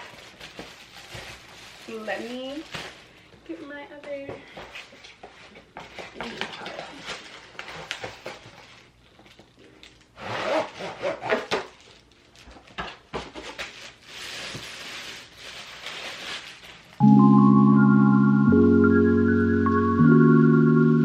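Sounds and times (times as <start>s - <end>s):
packaging rustling and crinkling: 0.0s - 3.2s, 4.7s - 17.0s.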